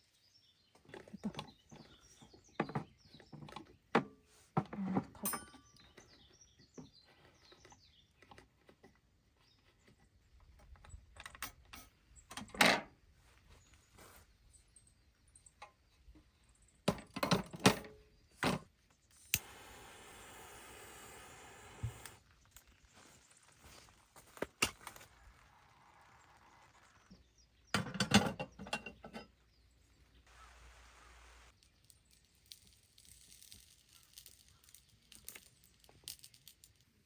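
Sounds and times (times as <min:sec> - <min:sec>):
steady hiss: 0:19.1 - 0:23.7, 0:30.2 - 0:31.6.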